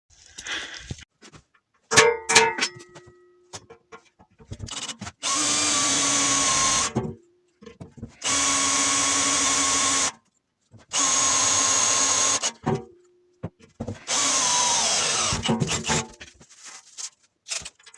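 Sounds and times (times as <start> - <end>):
power tool motor spinning: 14.1 - 15.9.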